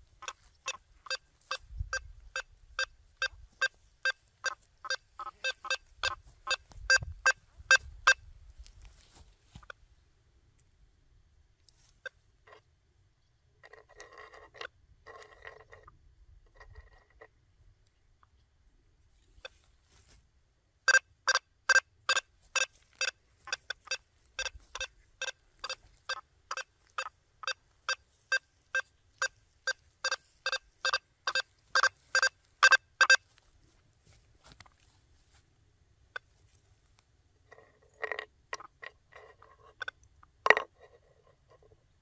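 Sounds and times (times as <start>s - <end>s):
metal detector beeps: 0.2s - 8.2s, 20.9s - 33.4s.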